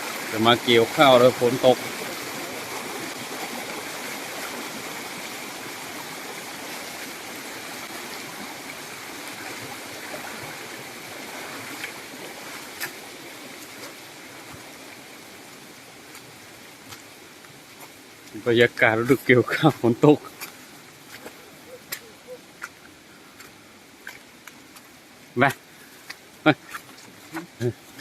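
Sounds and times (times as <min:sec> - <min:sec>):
steady rain hiss: 0:00.0 - 0:28.0
drip-like ticks: 0:16.9 - 0:28.0.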